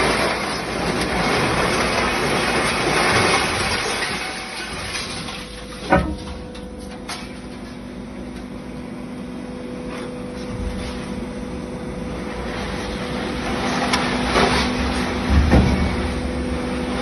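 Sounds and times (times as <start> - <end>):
baler machine hum: 4.4 - 17.0.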